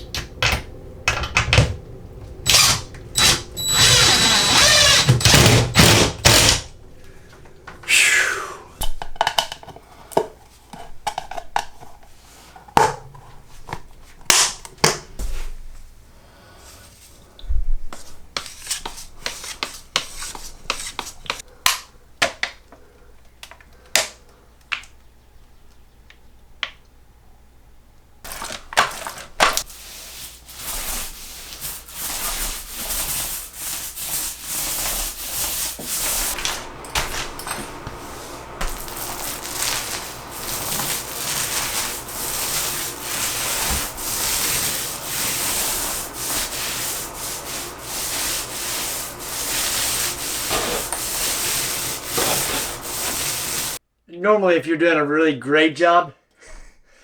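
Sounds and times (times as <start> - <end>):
hand tool rubbing against wall: 2.4 - 8.6, 29.6 - 53.8.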